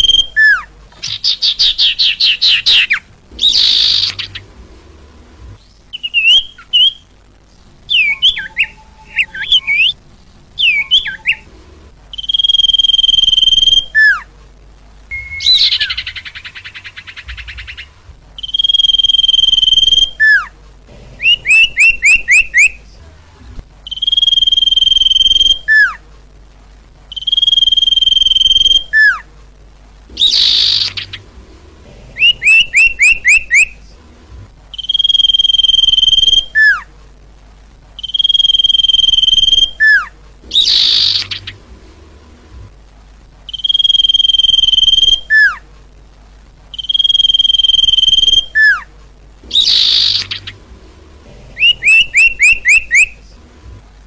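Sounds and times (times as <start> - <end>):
bird song whistles and chatter: 0.0 - 4.4, 5.6 - 7.1, 7.9 - 10.0, 10.6 - 11.5, 12.1 - 14.3, 15.1 - 20.5, 21.2 - 22.8, 23.8 - 26.0, 27.1 - 29.3, 30.2 - 31.2, 32.2 - 33.8, 34.7 - 36.9, 38.0 - 41.6, 43.5 - 45.6, 46.7 - 48.9, 49.5 - 50.6, 51.6 - 53.2.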